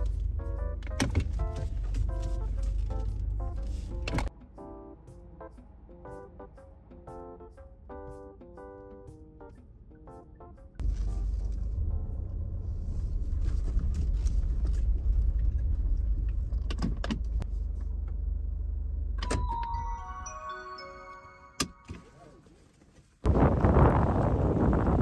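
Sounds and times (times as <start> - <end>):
car engine rumbling: 0.0 - 4.4, 10.6 - 19.6
wind gust on microphone: 23.3 - 25.0.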